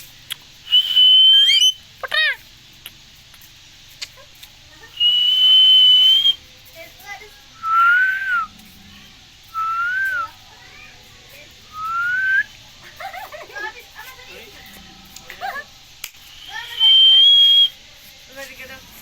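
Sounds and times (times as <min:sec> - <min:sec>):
faint chirps: 0:00.0 - 0:19.0
whistles: 0:00.7 - 0:01.8, 0:05.0 - 0:06.4, 0:07.6 - 0:08.5, 0:09.5 - 0:10.4, 0:11.7 - 0:12.6, 0:16.3 - 0:17.8.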